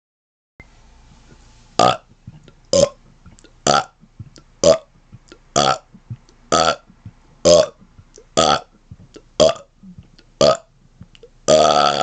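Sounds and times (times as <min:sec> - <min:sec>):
man burping: 0:03.6 - 0:10.7, 0:11.5 - 0:12.0.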